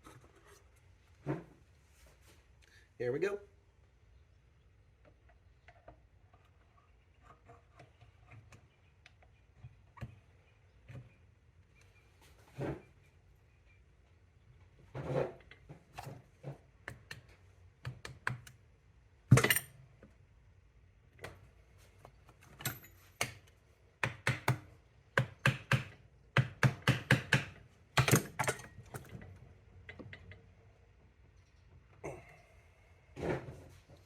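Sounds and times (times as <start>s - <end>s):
metal parts clicking and knocking: 19.3s - 19.8s, 28.0s - 29.3s.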